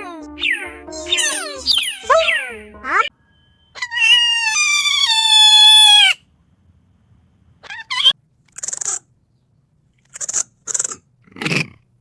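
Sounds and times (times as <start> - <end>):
puppy squeaks: 0.4 - 3.1, 3.8 - 6.2
puppy whining: 3.8 - 6.2.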